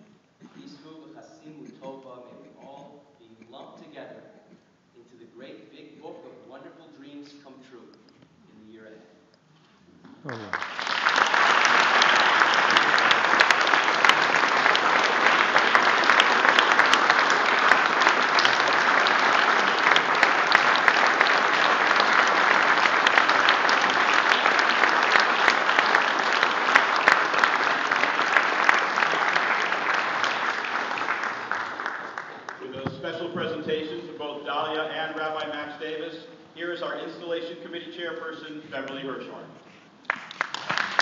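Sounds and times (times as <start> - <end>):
audience applauding: 10.2 - 33.8, 40.0 - 41.0.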